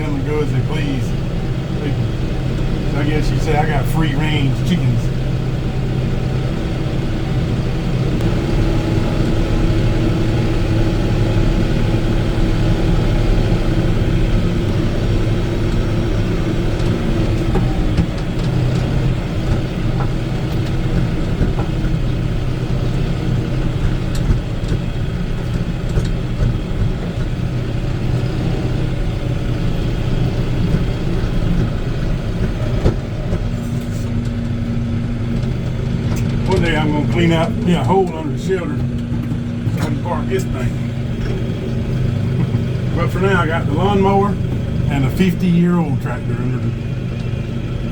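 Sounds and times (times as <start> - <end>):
tractor engine running: 0.0 - 47.9
steady hum: 28.8 - 47.9.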